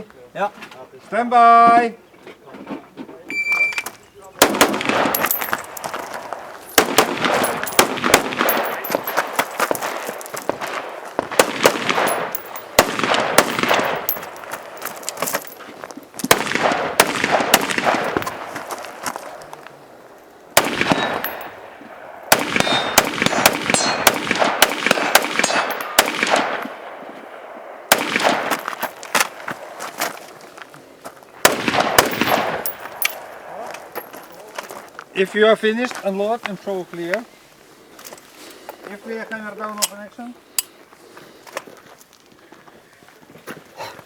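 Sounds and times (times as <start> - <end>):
rifle gunfire: 4.4 - 14.8, 16.3 - 18.9, 20.5 - 29.8, 31.4 - 33.9.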